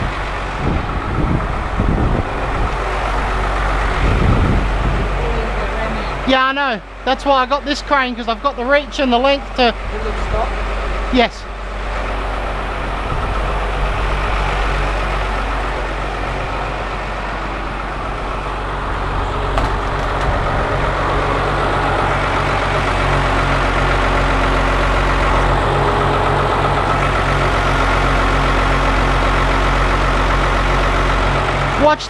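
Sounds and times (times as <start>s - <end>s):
engine idling with throb: 0.0s - 32.0s.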